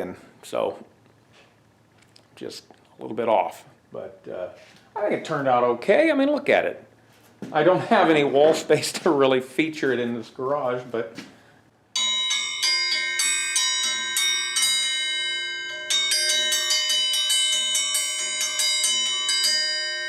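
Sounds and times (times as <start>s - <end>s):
triangle dinner bell ringing: 12.0s - 20.0s.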